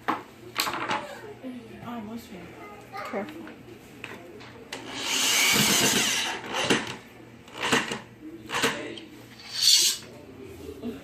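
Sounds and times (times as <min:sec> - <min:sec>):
power drill driving screws: 0:04.9 - 0:06.9.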